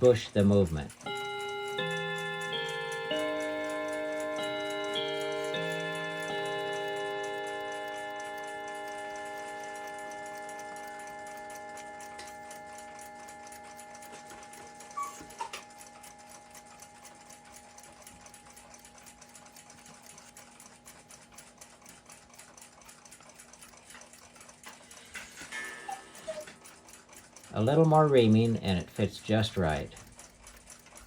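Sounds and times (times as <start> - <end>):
held tones: 0.0 - 20.4
mechanical ticking: 0.0 - 31.0.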